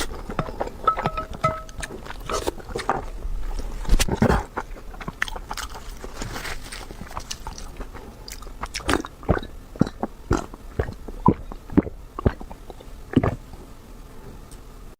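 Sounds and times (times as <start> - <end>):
person chewing food: 0.0 - 13.6.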